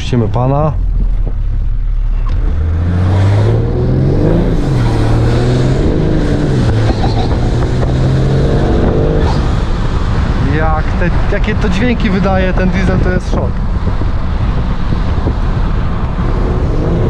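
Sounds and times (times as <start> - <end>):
diesel engine accelerating hard: 1.0 - 17.0.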